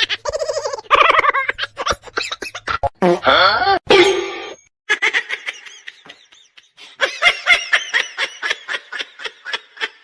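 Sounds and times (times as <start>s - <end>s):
high-pitched snickering laughter: 0.0s - 3.5s.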